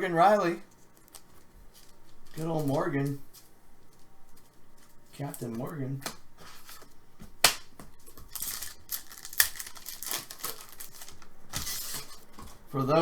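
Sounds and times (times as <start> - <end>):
wrapper foil crinkling: 0.0 - 5.8, 6.4 - 13.0
tearing rustle: 8.0 - 12.3.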